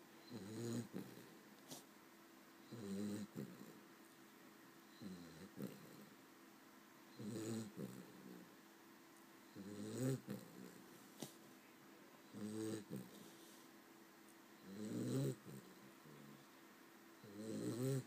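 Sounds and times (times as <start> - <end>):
dog snoring: 0.2 - 1.8, 2.6 - 3.8, 4.9 - 6.2, 7.1 - 8.5, 9.5 - 10.9, 12.2 - 13.6, 14.6 - 16.4, 17.2 - 18.0.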